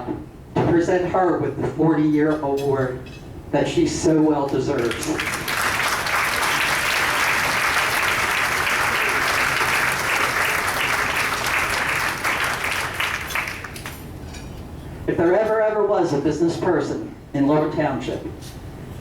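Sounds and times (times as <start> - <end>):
audience applauding: 4.8 - 14.0.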